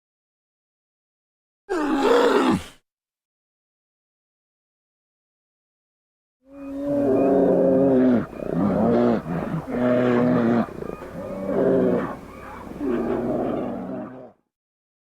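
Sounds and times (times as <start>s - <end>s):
bear growling: 6.6s - 14.4s.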